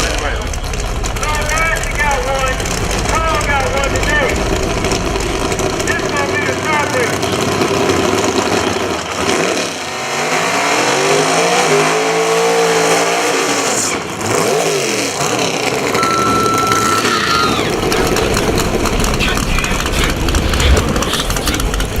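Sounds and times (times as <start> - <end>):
race car engines revving: 0.0 - 22.0
steady high whistle: 16.0 - 18.7.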